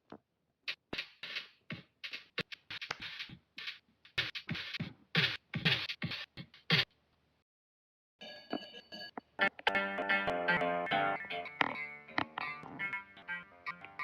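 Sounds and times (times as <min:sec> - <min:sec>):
beatboxing mouth percussion: 0:00.7 - 0:06.9.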